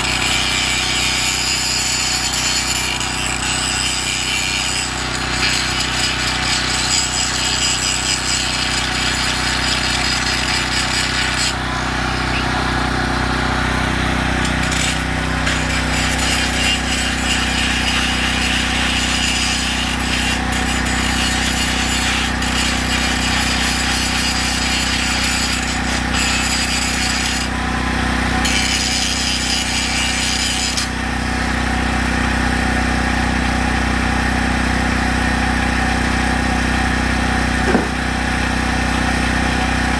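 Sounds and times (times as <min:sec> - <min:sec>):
power tool on steel: 0:00.0 - 0:31.2, 0:37.4 - 0:39.9.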